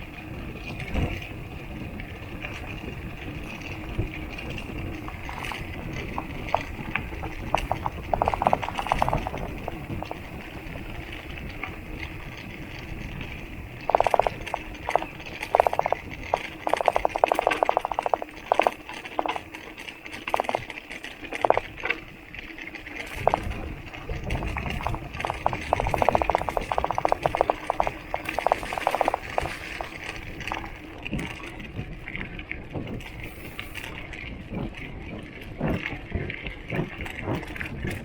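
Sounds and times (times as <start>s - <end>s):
bike bottle cage rattling: 2.8s - 30.9s.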